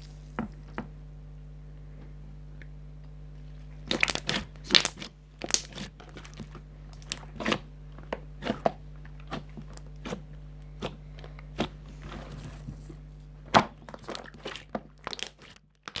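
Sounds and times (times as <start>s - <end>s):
faint steady hum: 0.0s - 16.0s
slime crackling and popping: 3.8s - 7.6s, 13.9s - 16.0s.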